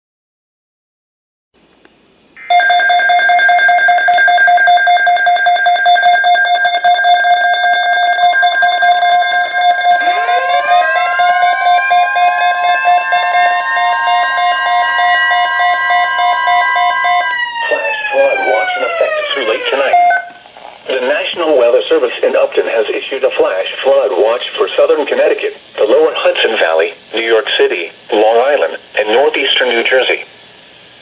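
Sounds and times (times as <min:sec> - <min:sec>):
rising siren: 0:02.4 - 0:20.4
loud electronic alarm: 0:02.4 - 0:21.6.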